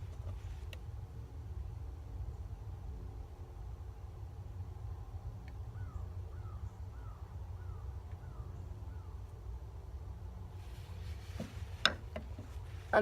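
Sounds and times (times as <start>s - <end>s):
bird calling: 5.7s - 9.4s.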